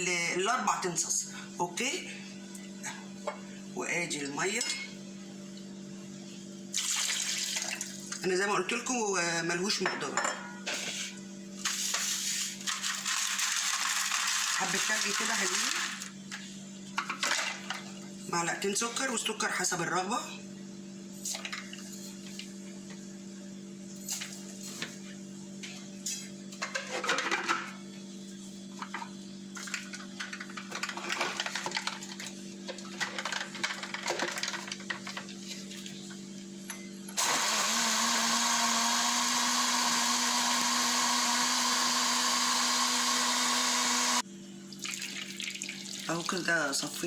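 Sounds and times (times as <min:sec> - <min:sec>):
electric blender running: 0:12.7 - 0:16.1, 0:37.2 - 0:44.2.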